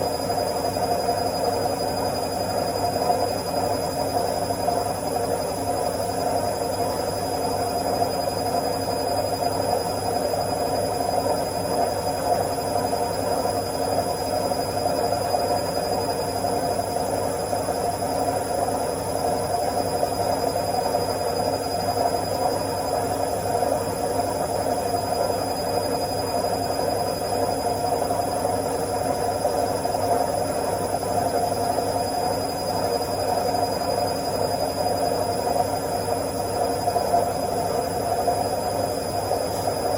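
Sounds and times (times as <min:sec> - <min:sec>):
washing machine spinning: 0:00.0 - 0:39.9.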